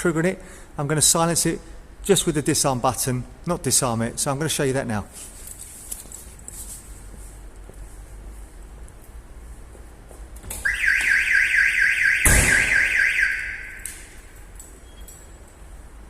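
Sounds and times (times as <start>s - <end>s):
car alarm electronic warble: 10.6s - 13.8s.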